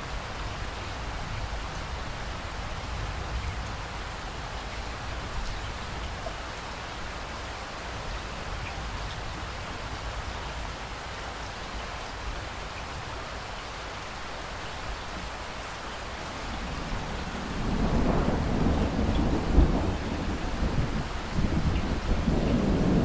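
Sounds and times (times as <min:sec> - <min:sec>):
steady rain: 0:00.0 - 0:23.0
thunder rolling and cracking: 0:16.8 - 0:23.0.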